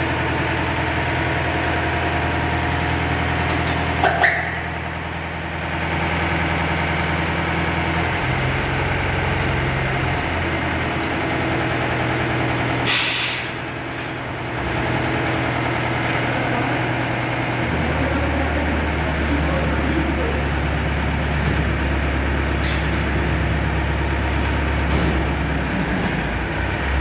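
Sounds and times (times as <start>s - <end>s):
diesel engine running: 0.0s - 27.0s
air release hiss: 12.9s - 13.5s.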